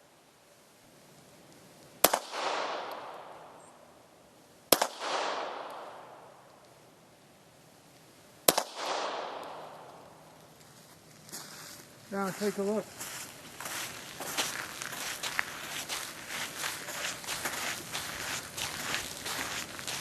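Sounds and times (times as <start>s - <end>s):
pistol shots with echo: 2.0s - 3.6s, 4.7s - 6.3s, 8.5s - 10.0s.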